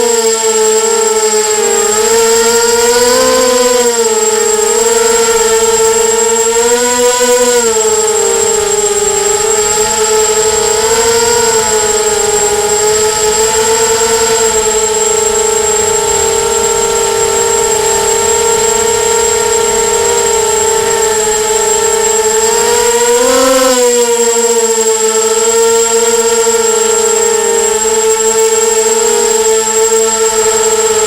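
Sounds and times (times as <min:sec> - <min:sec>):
quadcopter motors whining: 0:00.0 - 0:31.0
steady high-pitched tone: 0:02.5 - 0:24.1.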